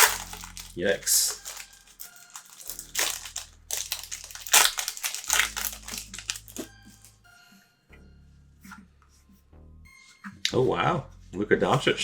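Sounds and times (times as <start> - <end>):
card pack wrapper crinkling: 0.0 - 7.1.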